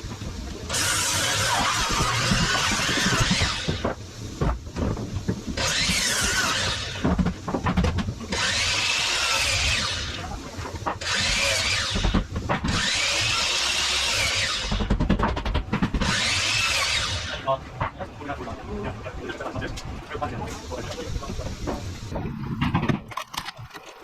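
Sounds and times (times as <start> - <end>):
power saw cutting lumber: 0.7 - 3.9, 5.6 - 7.3, 8.2 - 15.1, 15.8 - 17.5.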